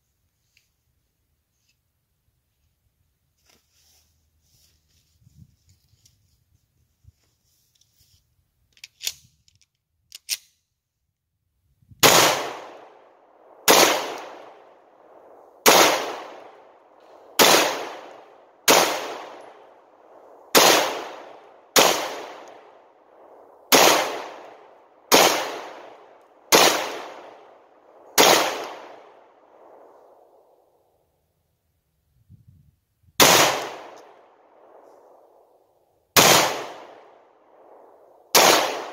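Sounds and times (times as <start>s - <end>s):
pistol shots with echo: 12.0s - 30.0s, 33.2s - 34.8s, 36.2s - 38.9s.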